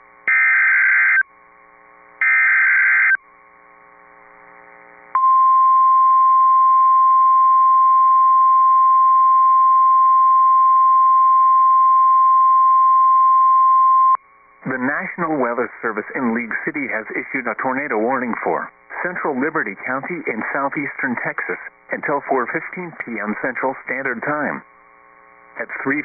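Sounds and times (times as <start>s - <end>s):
buzzy data squawk: 0.3s - 1.2s, 2.2s - 3.2s
single-pitch warning alarm tone: 0.3s - 1.2s, 2.2s - 3.2s.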